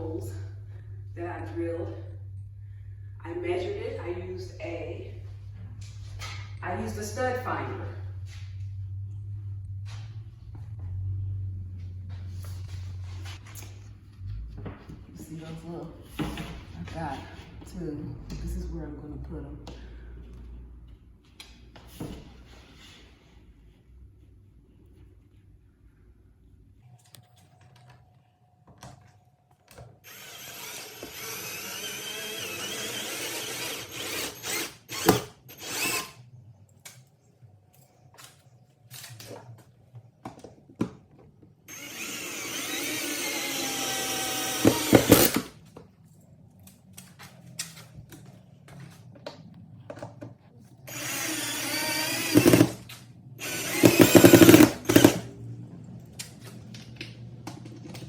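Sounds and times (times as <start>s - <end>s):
electric drill running: 30.0s - 36.2s, 41.7s - 45.6s, 50.9s - 55.3s.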